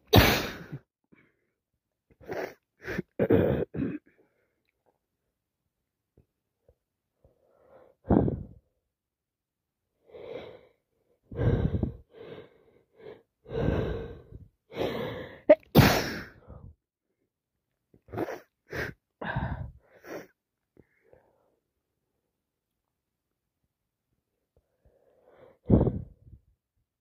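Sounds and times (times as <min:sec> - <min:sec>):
woman sneezing: 0:00.1 - 0:00.8, 0:15.5 - 0:16.4.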